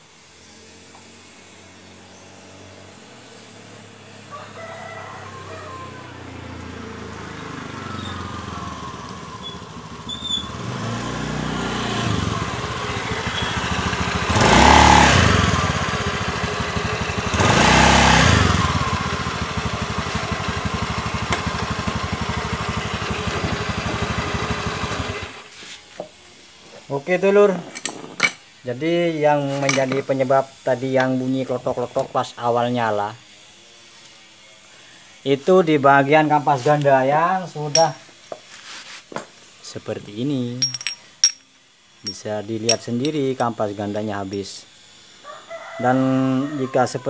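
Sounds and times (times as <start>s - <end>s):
scooter engine revving: 5.2s - 25.5s.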